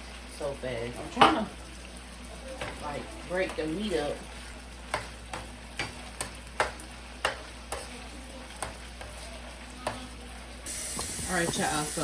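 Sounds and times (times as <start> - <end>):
meat sizzling in a frying pan: 0.0 - 12.0
utensil knocking against pan: 11.0 - 11.8.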